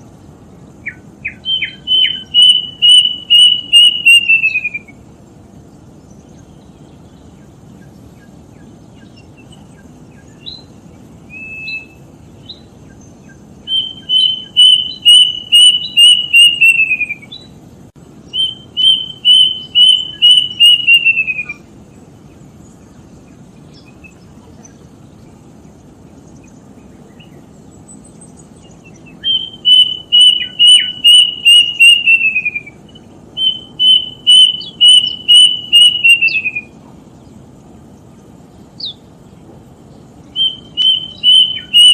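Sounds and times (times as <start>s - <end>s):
bird whistling calls: 0.8s - 5.0s, 6.2s - 17.6s, 18.3s - 21.7s, 26.3s - 36.9s, 38.8s - 39.1s, 40.2s - 41.9s.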